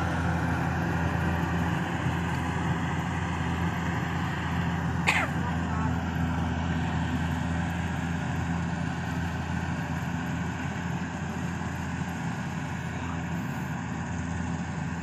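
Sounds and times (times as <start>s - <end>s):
combine harvester running: 0.0s - 15.0s.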